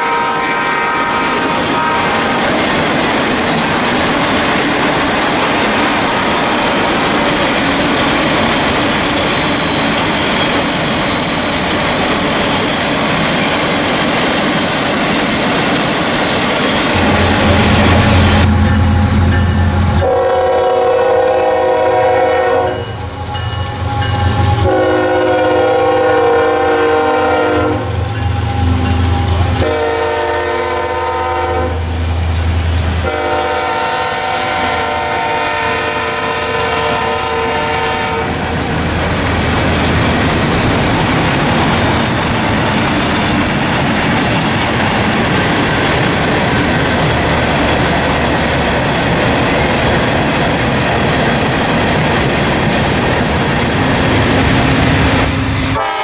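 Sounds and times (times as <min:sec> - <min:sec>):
locomotive horn blasts: 0:00.0 - 0:02.4, 0:16.9 - 0:31.9, 0:33.0 - 0:38.4, 0:53.8 - 0:56.0
train wheels clacking: 0:01.2 - 0:20.6, 0:36.4 - 0:56.0
low engine rumble: 0:16.9 - 0:20.2.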